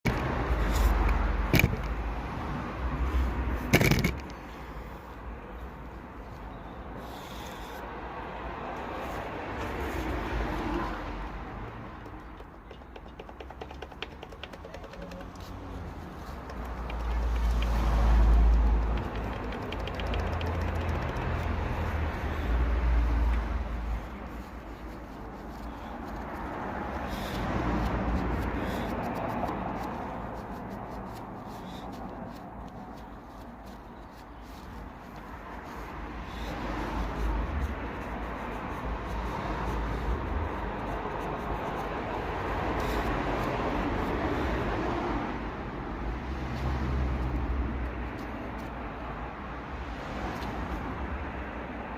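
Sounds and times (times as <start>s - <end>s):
diesel engine knocking: 11.9s - 22.2s
engine rod knocks: 12.4s - 15.3s.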